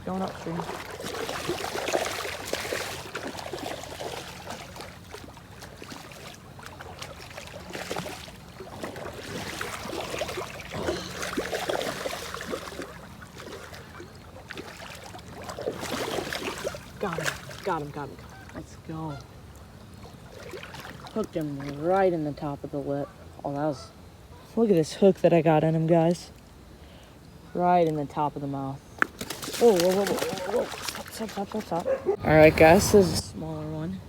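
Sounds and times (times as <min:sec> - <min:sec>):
creek water rushing: 0:00.0 - 0:18.7, 0:29.4 - 0:33.5
fish splashing in water: 0:00.2 - 0:21.8, 0:29.0 - 0:32.2.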